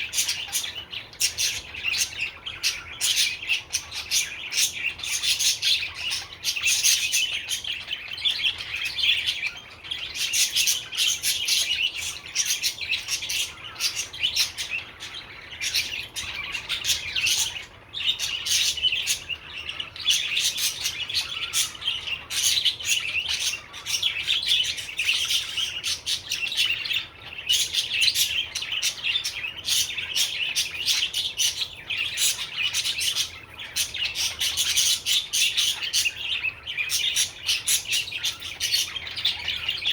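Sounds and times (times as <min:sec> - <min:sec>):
budgerigar chattering and warbling: 0:00.0 - 0:39.9.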